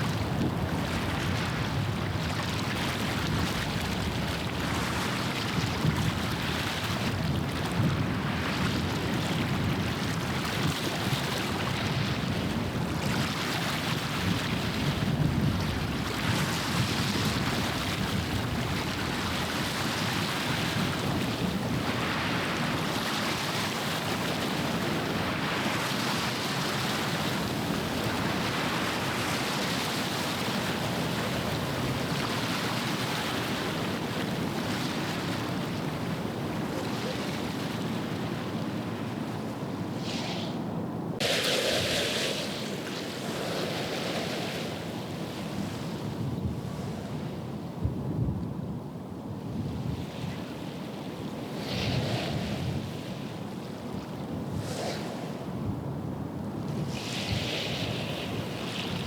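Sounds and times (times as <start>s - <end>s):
wind on microphone: 0.0s - 59.0s
waves washing against shore: 12.2s - 47.8s, 51.3s - 59.0s.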